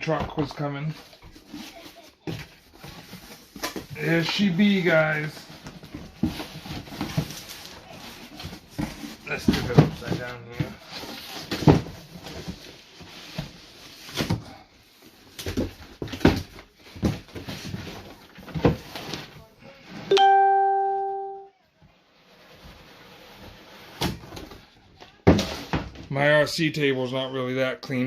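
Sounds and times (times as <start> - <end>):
bell-like chime: 20.1 - 21.5.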